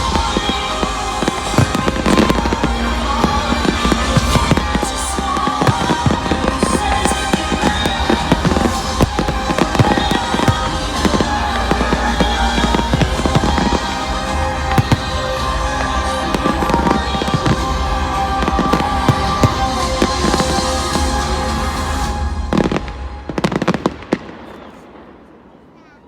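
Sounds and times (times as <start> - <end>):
music playing: 0.0 - 25.2
fireworks bangs and crackling: 0.0 - 26.0.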